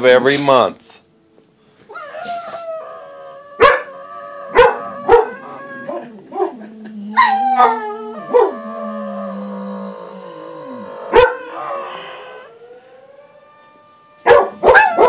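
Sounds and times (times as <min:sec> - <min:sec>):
dogs howling: 0:01.9 - 0:15.0
dogs barking: 0:03.6 - 0:08.7, 0:11.1 - 0:11.6, 0:14.2 - 0:15.0.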